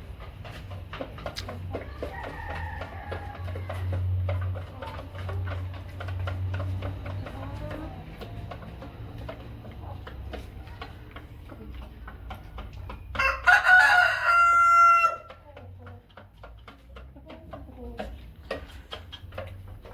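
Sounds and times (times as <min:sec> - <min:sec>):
chickens clucking softly: 0:00.0 - 0:19.9
rooster crowing loudly: 0:01.9 - 0:03.4, 0:13.2 - 0:15.3.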